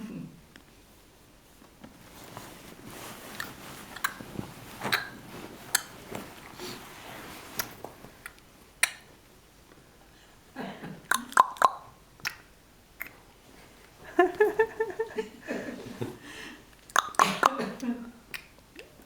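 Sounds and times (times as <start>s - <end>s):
child making mouth noises: 11.1s - 12.4s, 16.9s - 17.6s.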